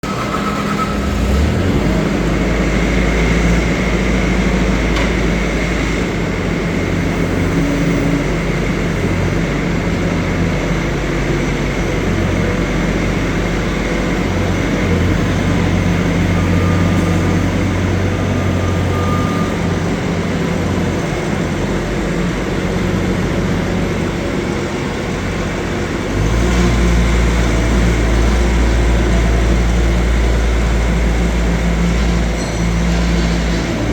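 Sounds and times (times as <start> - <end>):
skid steer diesel engine: 0.0 - 33.9.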